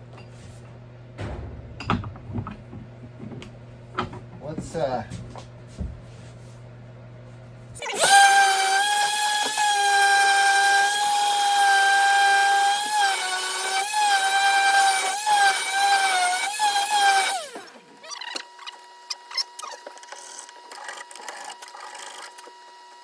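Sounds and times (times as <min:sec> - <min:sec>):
power tool motor whining: 0:07.8 - 0:23.0.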